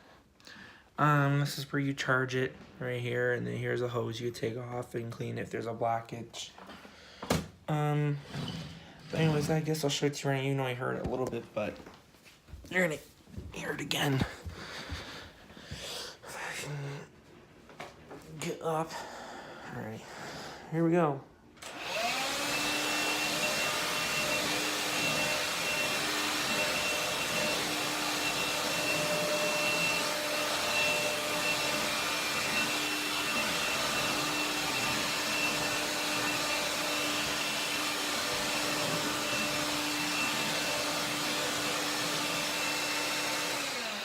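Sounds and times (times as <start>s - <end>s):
stick vacuum running: 21.6s - 44.0s.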